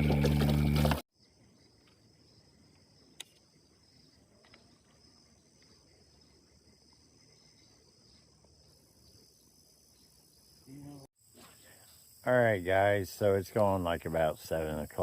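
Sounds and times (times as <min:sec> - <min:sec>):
insects chirping: 0:01.1 - 0:15.0
sharp click: 0:03.2 - 0:03.4.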